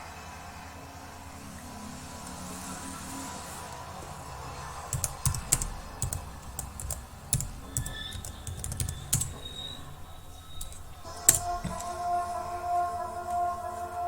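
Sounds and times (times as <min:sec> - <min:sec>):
computer keyboard key clicks: 0:04.9 - 0:12.0.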